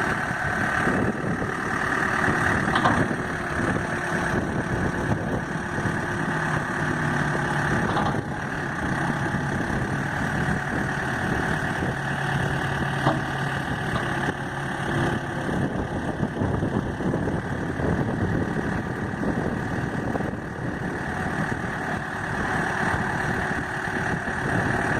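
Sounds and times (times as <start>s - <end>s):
diesel engine idling: 0.0s - 24.9s.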